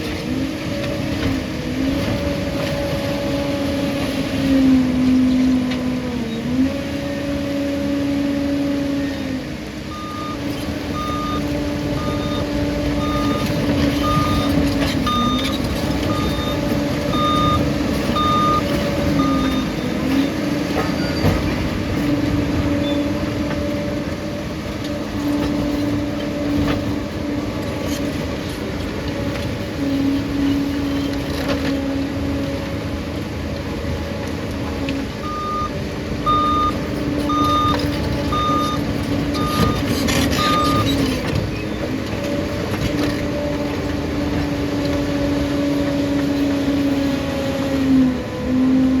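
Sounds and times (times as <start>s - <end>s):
bulldozer diesel engine running: 0.0s - 49.0s
reversing alarm beeping: 9.9s - 21.5s, 35.2s - 41.1s.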